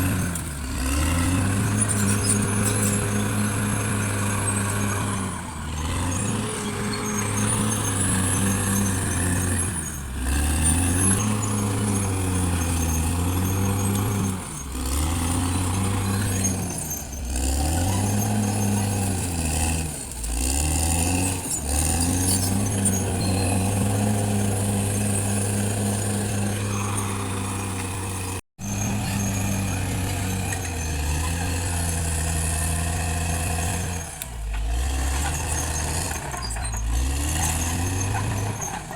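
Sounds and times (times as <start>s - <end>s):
bulldozer diesel engine under load: 0.0s - 38.9s
high squeal: 21.3s - 27.8s.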